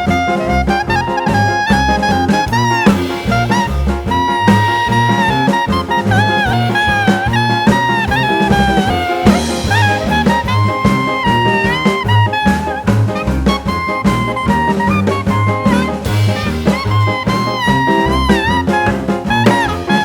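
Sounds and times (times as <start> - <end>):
jazz music with saxophone lead: 0.0 - 20.0.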